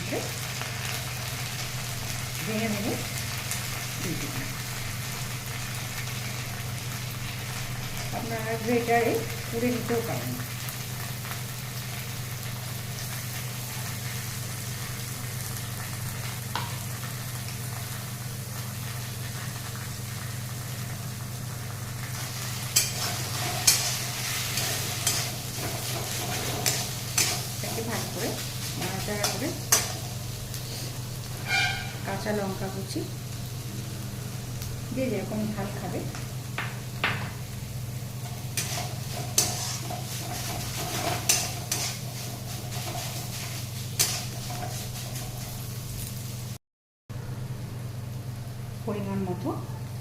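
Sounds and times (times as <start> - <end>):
food sizzling in oil: 0.0 - 46.6
spatula scraping and knocking pan: 22.7 - 27.8, 31.4 - 32.0, 38.6 - 45.5.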